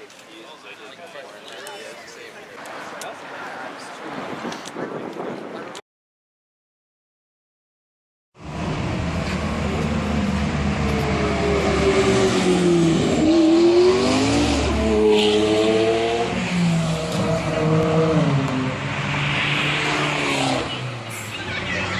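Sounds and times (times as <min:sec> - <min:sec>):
car engine accelerating hard: 0:08.4 - 0:21.9.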